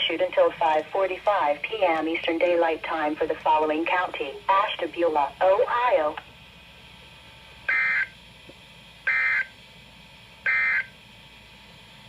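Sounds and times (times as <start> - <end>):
faint radio hiss: 0.0 - 6.9.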